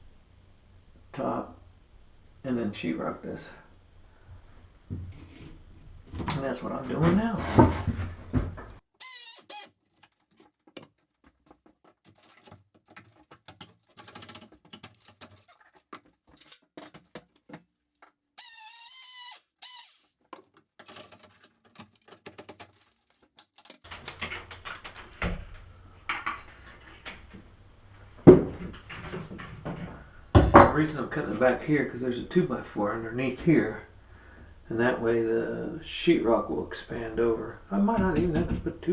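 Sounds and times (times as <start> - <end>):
hand tools clicking and scraping: 8.9 - 23.9
wavering high squeak: 9.0 - 10.2, 18.4 - 20.1.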